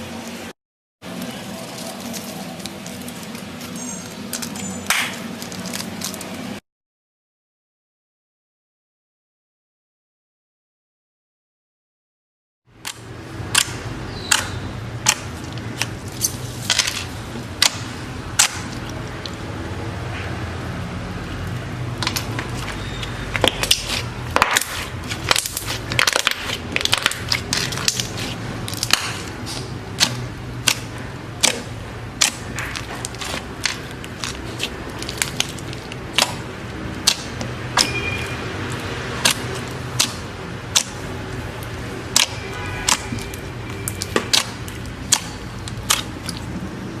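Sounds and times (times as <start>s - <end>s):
slime clicking and popping: 23.4s - 36.4s, 37.0s - 38.0s, 39.2s - 46.5s.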